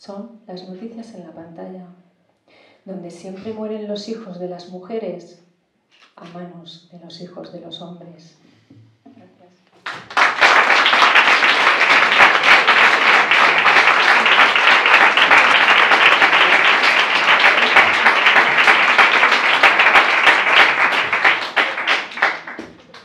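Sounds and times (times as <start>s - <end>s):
audience applauding: 9.8s - 23.0s.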